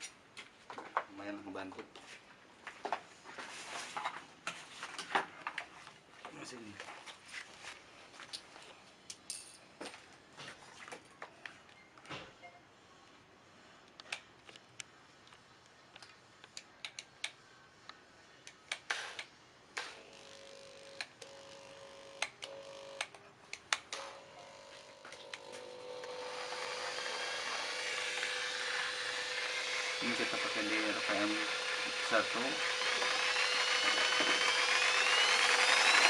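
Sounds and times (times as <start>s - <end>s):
jigsaw motor running: 24.1s - 36.0s.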